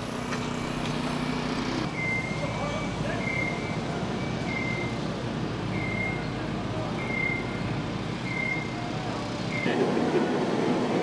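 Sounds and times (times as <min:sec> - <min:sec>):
machinery rumble: 0:00.0 - 0:11.0
reversing alarm beeping: 0:01.9 - 0:05.0, 0:05.7 - 0:06.2, 0:07.0 - 0:07.6, 0:08.2 - 0:08.8, 0:09.5 - 0:09.8.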